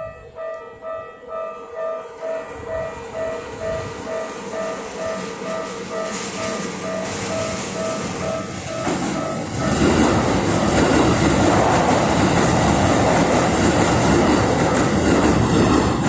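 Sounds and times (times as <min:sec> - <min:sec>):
level crossing bell ringing: 0:00.0 - 0:09.8
electric train passing: 0:00.0 - 0:16.0.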